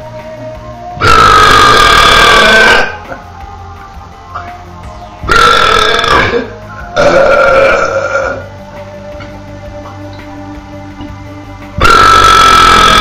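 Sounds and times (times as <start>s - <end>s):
background music: 0.0s - 13.0s
loud belches: 1.0s - 3.0s, 5.3s - 8.4s, 11.8s - 13.0s.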